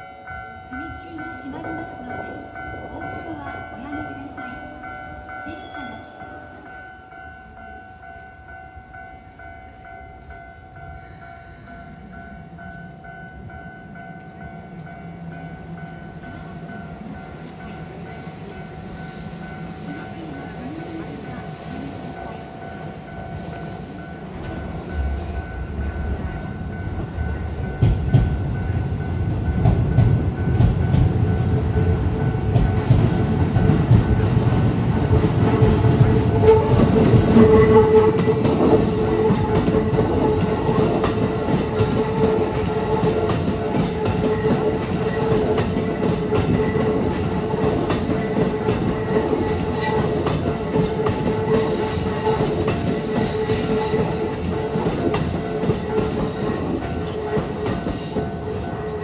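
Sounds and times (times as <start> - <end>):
level crossing warning bell: 0.0 - 59.0
train rumble: 0.0 - 59.0
train wheels clacking over rail joints: 27.0 - 59.0.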